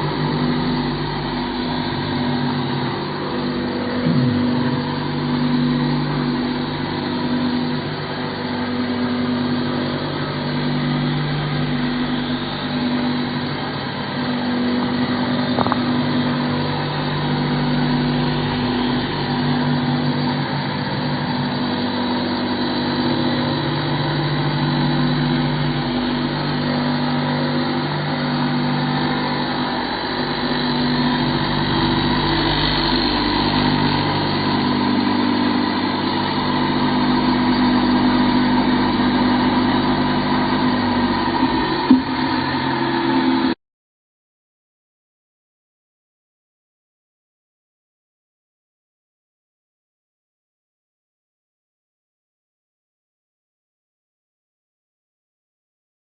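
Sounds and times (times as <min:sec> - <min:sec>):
knife-sharpening grinder running: 0:00.0 - 0:43.5.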